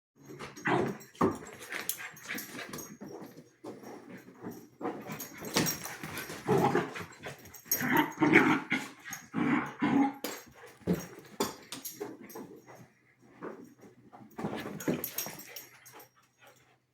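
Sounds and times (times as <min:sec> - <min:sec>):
dogs growling and yipping: 0:00.2 - 0:03.2, 0:04.4 - 0:11.1.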